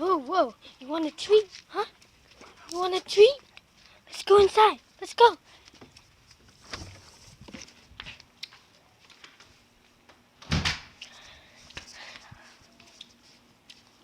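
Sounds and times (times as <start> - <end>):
door opening and shutting: 10.4 - 11.0.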